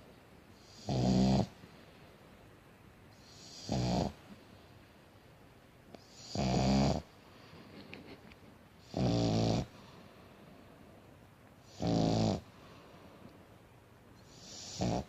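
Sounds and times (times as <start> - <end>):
dog snoring: 0.5 - 1.6, 3.2 - 4.2, 6.0 - 7.1, 8.8 - 9.8, 11.6 - 12.5, 14.2 - 15.0.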